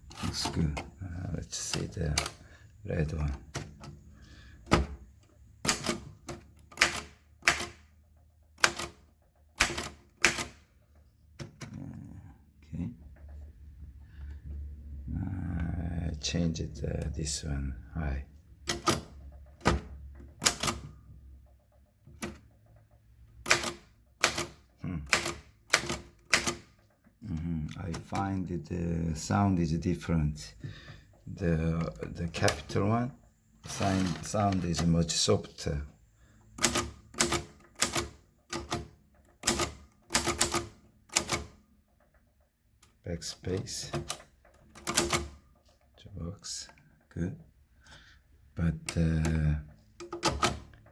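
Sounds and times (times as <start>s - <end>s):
manual typewriter key strikes: 0.0s - 2.4s, 4.6s - 10.8s, 18.6s - 21.0s, 22.0s - 27.0s, 36.6s - 42.2s, 43.5s - 45.5s, 48.8s - 50.9s.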